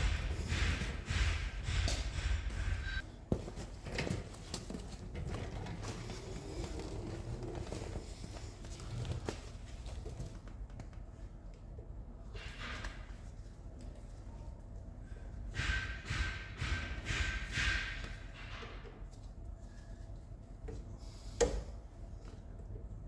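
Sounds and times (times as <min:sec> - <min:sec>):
hand tools knocking on metal: 0:00.0 - 0:03.0, 0:15.5 - 0:19.0.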